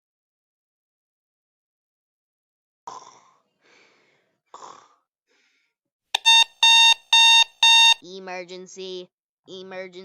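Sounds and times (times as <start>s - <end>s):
noisy breaths: 3.6s - 4.4s
electronic alarm beeping: 6.2s - 8.0s.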